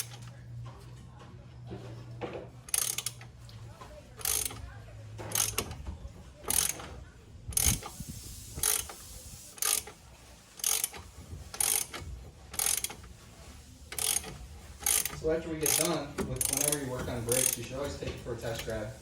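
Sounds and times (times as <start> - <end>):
socket wrench ratchet clicking: 2.7 - 3.3, 4.2 - 4.6, 5.3 - 5.8, 6.5 - 6.8, 7.5 - 8.0, 8.6 - 10.0, 10.6 - 12.0, 12.6 - 13.1, 13.9 - 16.8.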